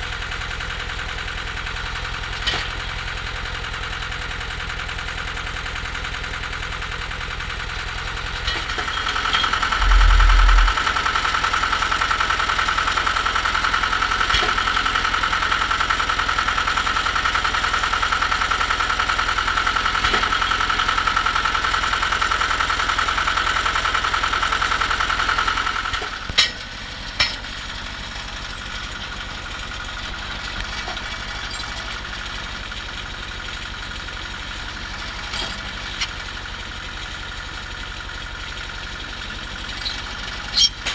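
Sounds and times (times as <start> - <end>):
drilling rig engine running: 6.4 - 40.9
deep rumble: 9.5 - 11.0
high whine: 9.7 - 11.0.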